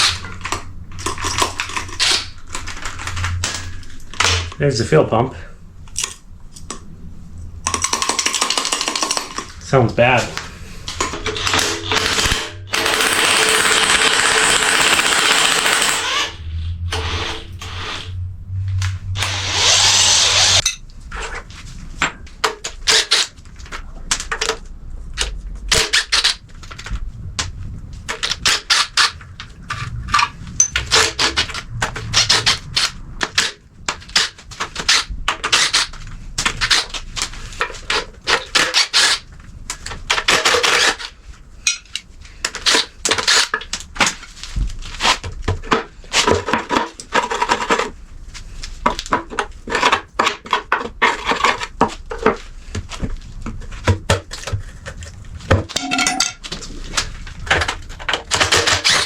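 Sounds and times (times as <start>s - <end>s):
power tool running: 11.4s - 18.0s, 19.2s - 20.6s
sharp metal clicks and clinks: 55.8s - 56.4s.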